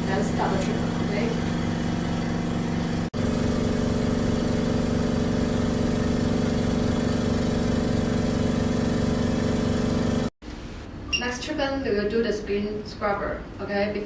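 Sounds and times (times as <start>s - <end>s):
pump mechanical hum: 0.0s - 10.9s.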